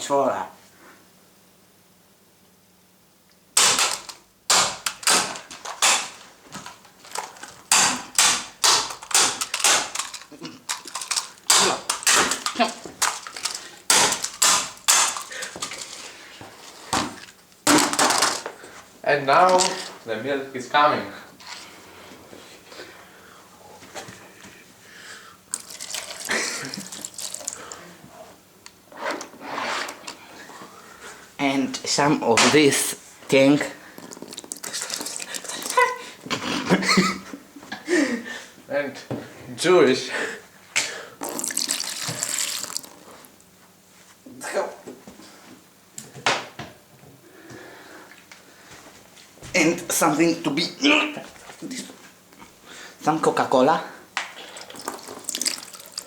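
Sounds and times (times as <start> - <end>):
plastic cracking and crunching: 3.6 - 16.1, 25.5 - 27.8, 34.0 - 35.8, 54.6 - 56.0
milk pouring and splashing: 25.5 - 27.8, 33.9 - 35.8, 41.2 - 43.3, 54.4 - 56.0.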